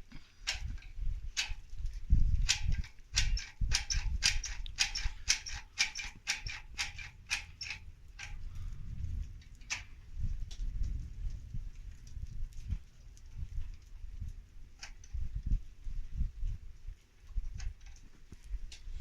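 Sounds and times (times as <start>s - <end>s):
sharp mechanical clicks: 0.4s - 1.7s, 2.4s - 8.4s, 9.3s - 10.6s
low rumble: 3.6s - 17.5s.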